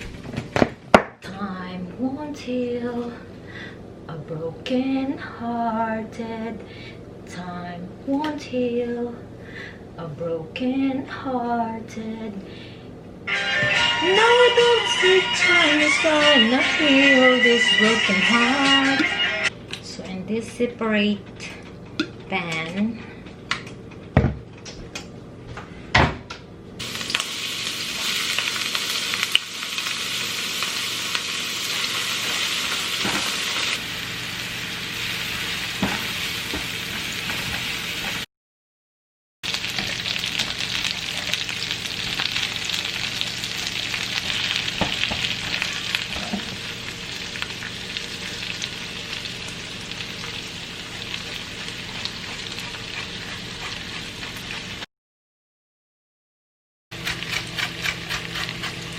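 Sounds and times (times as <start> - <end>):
food sizzling in a pan: 26.8 - 38.3, 39.4 - 54.9.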